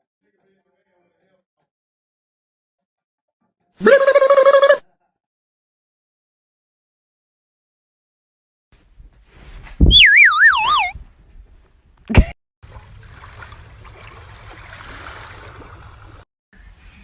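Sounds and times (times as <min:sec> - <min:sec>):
falling whistle tone: 0:09.8 - 0:10.9.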